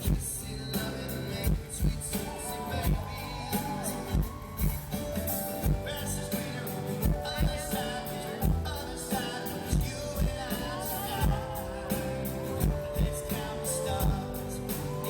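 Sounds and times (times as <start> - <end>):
live pop band playing: 0.0 - 15.0
person singing: 0.0 - 15.0
drum beat: 1.4 - 15.0.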